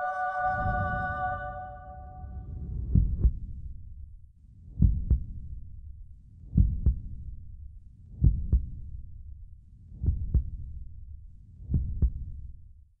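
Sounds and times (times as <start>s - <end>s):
heartbeat thumps: 2.6s - 3.9s, 4.7s - 5.8s, 6.5s - 7.4s, 8.2s - 9.1s, 10.0s - 10.9s, 11.7s - 12.4s.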